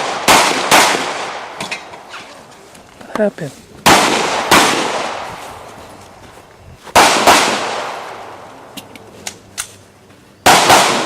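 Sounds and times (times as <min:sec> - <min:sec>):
echoing pistol shots: 0:00.0 - 0:01.7, 0:03.8 - 0:05.3, 0:07.0 - 0:08.4, 0:10.4 - 0:11.0.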